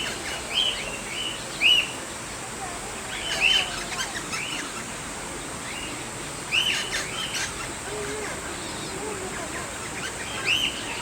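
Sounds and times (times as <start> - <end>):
faint bird twittering: 5.6 - 11.0.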